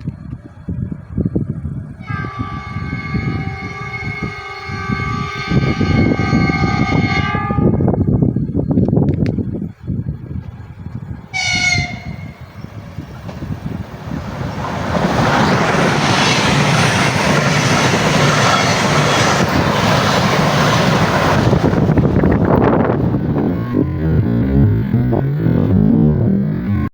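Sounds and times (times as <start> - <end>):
train passing on rails: 0.0 - 25.8
train horn blast: 2.0 - 8.2, 11.3 - 12.6.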